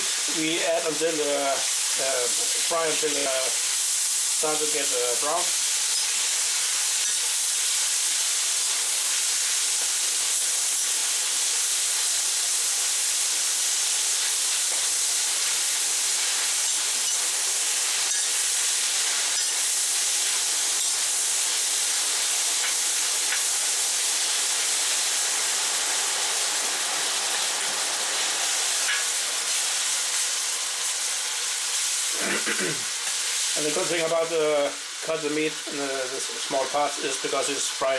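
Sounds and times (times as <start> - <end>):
meat sizzling in hot oil: 0.0 - 37.9.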